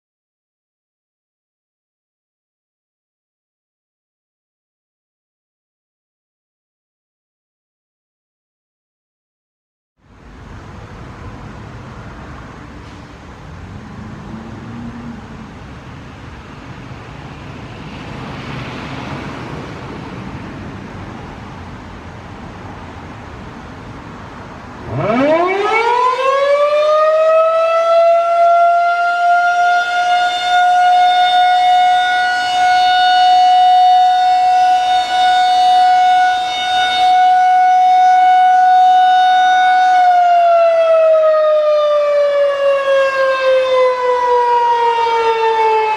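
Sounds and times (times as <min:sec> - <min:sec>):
rotating siren wailing: 0:13.7 - 0:15.7, 0:24.8 - 0:45.9.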